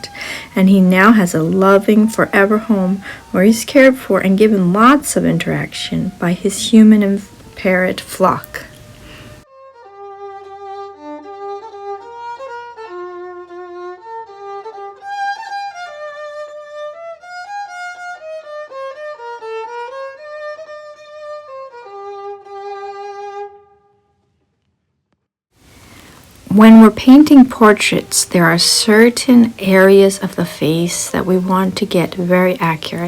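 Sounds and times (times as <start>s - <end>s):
solo melody: 0.0s - 23.8s.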